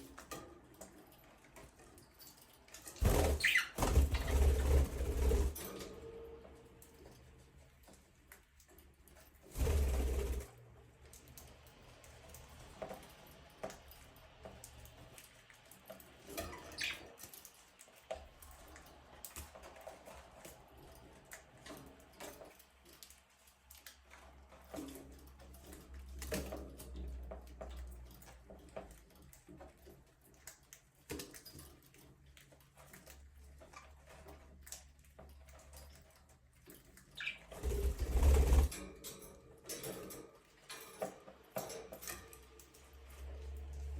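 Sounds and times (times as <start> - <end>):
budgerigars chirping softly: 3.4 - 3.8, 16.6 - 17.2, 37.1 - 37.5.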